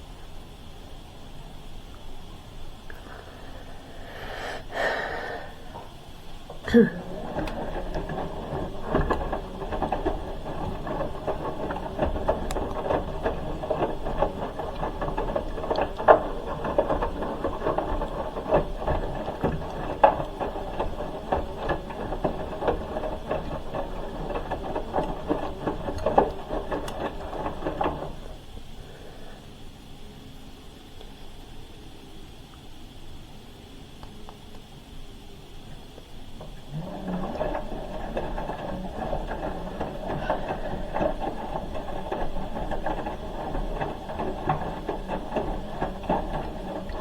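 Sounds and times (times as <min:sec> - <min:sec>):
washing machine drum tumbling: 0:04.6 - 0:28.6, 0:35.8 - 0:47.0.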